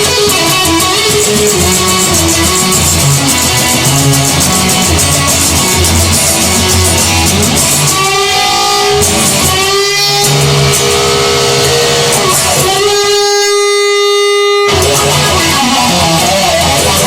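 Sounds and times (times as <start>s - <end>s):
rock music with electric guitar: 0.0s - 17.0s.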